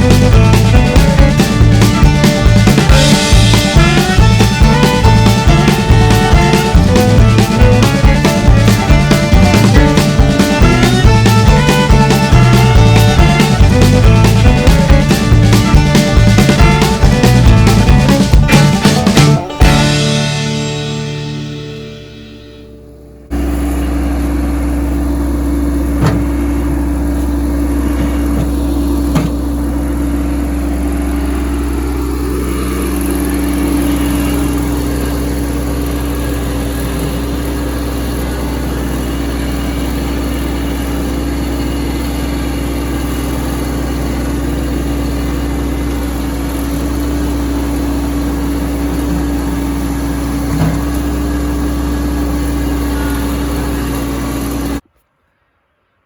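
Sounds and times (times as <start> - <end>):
tractor engine running: 0.0 - 55.0.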